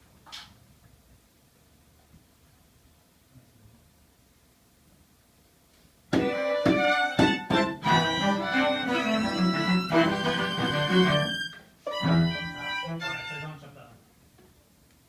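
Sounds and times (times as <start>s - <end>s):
string quartet playing: 6.2s - 13.7s.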